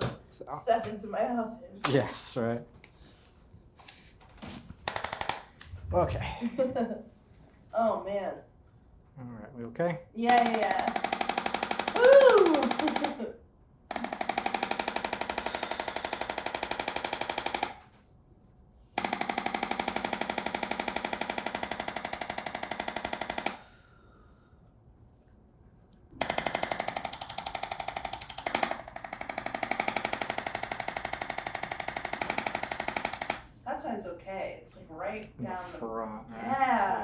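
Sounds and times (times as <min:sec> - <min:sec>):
massage gun hammering: 0:10.3 - 0:13.2, 0:13.9 - 0:17.9, 0:19.0 - 0:23.6, 0:26.2 - 0:33.5.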